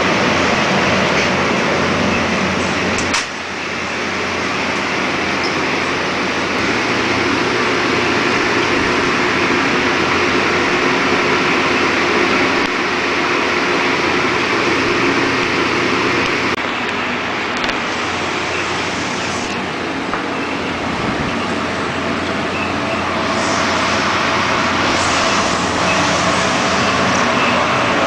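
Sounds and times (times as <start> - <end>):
cooling fans rushing: 0.0 - 28.0.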